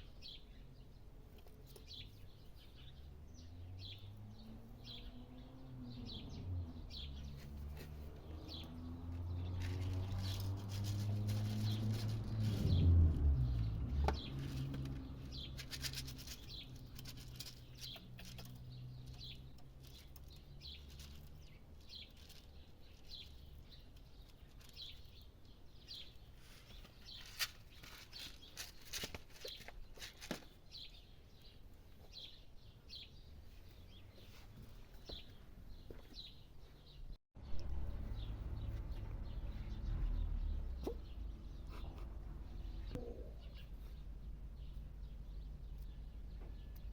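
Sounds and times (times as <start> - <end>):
small bird chirping: 0.0 - 12.8, 13.5 - 46.9
clicks and rustles: 9.1 - 12.7, 14.0 - 25.3, 26.6 - 30.6.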